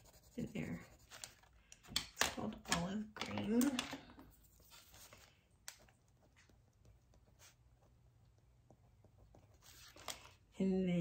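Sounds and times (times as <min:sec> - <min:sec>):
pencil scratching on paper: 0:00.0 - 0:01.5, 0:06.0 - 0:10.1.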